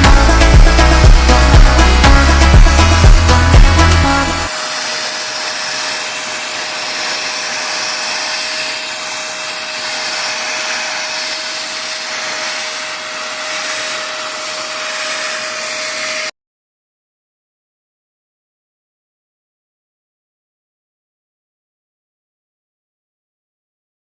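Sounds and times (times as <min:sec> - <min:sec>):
vacuum cleaner running: 0:00.0 - 0:16.4.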